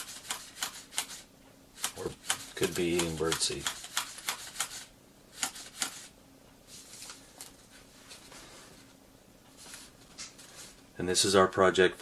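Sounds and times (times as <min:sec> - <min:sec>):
sharp paper clicks: 0:00.0 - 0:01.2, 0:01.8 - 0:06.1
paper rustling: 0:06.7 - 0:09.0.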